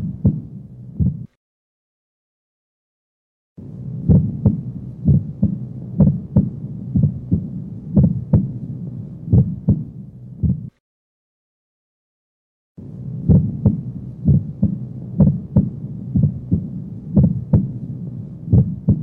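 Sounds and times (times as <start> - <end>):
heartbeat lub-dub: 0.0 - 1.3, 3.8 - 10.7, 13.0 - 19.0
low steady hum: 0.0 - 1.3, 3.6 - 10.7, 12.8 - 19.0.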